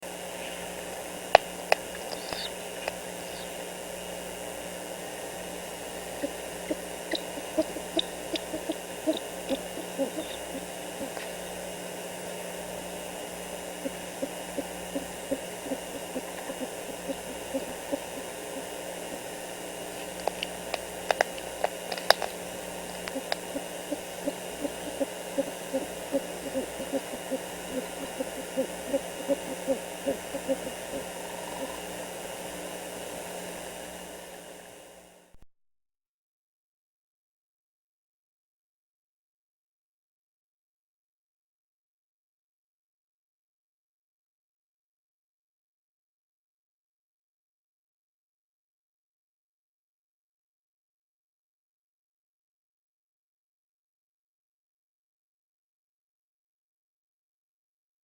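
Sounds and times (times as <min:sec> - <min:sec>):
owls calling: 0:00.0 - 0:04.2, 0:05.1 - 0:32.8
microphone hiss and hum: 0:00.0 - 0:35.4
sharp snaps: 0:00.4 - 0:03.7, 0:20.0 - 0:31.0.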